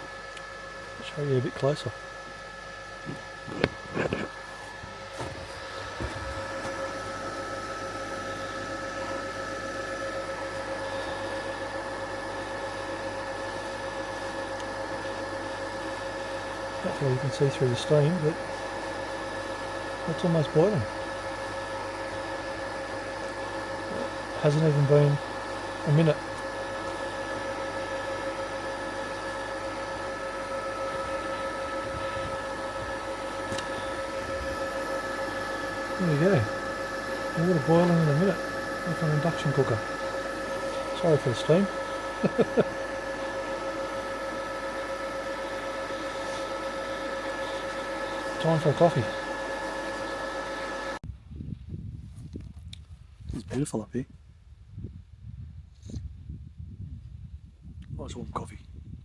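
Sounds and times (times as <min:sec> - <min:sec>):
induction cooker fan whine: 0:00.0 - 0:53.2
high-pitched electronic whine: 0:09.4 - 0:11.4, 0:28.4 - 0:42.8.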